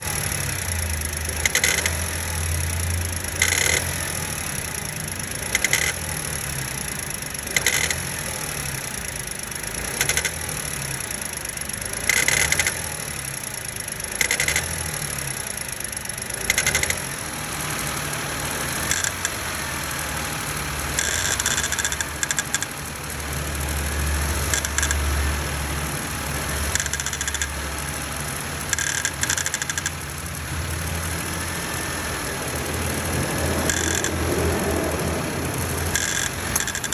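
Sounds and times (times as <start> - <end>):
car engine running: 0.0 - 36.9
engine belt grinding noise: 0.0 - 36.9.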